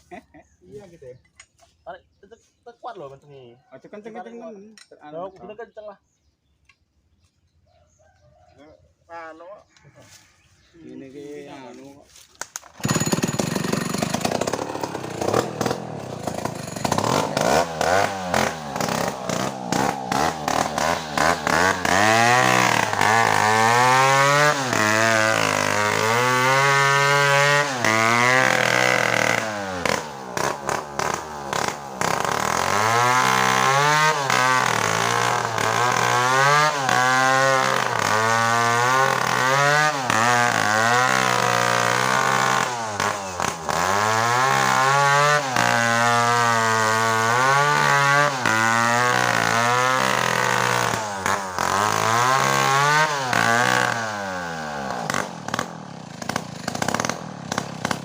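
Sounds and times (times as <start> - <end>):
chainsaw pull-start: 12.4 - 58.0
chainsaw engine revving: 12.5 - 58.0.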